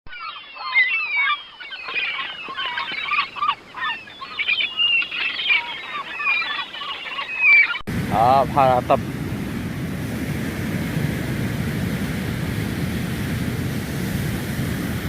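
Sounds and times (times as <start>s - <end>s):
birds chattering: 0.1s - 7.8s.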